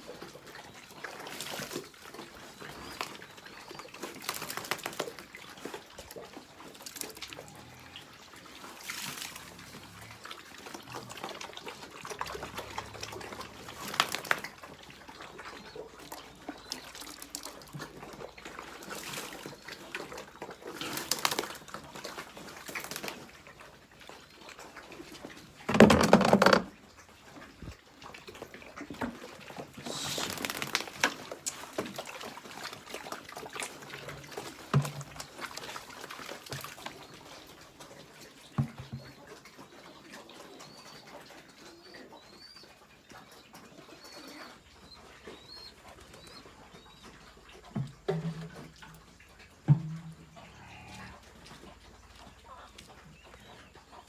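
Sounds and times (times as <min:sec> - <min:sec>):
pigeons cooing: 0:09.2 - 0:16.8, 0:29.7 - 0:31.3, 0:39.6 - 0:47.4.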